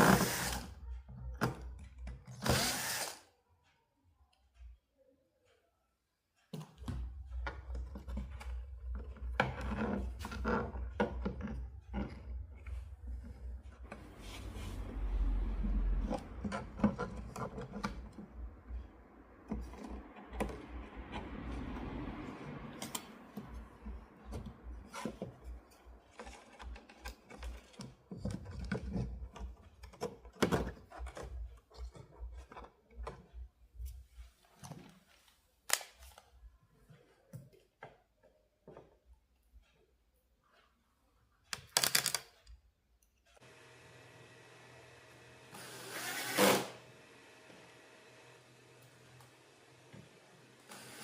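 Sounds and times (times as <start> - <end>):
small parts and tools clicking: 41.4 - 43.4.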